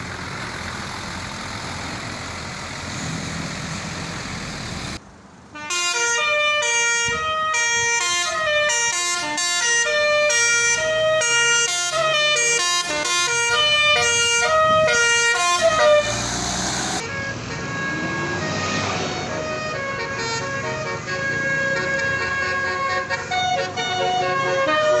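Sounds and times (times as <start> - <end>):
hazy vehicle noise: 0.0 - 25.0
multi-tone bus horn tune: 5.5 - 25.0.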